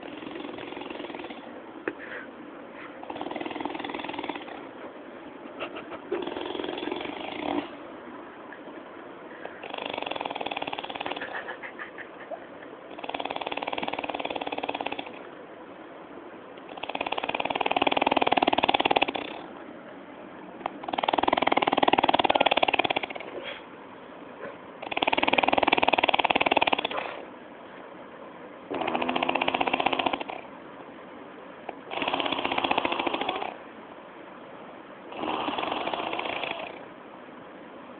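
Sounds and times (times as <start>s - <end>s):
person snoring: 3.0s - 4.6s, 6.2s - 7.7s, 9.6s - 11.2s, 12.9s - 15.2s, 28.8s - 30.4s.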